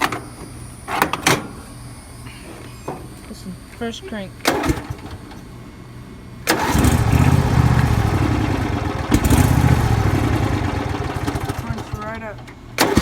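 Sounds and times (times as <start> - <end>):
lawn mower engine starting and running: 4.4 - 5.6, 6.4 - 13.0.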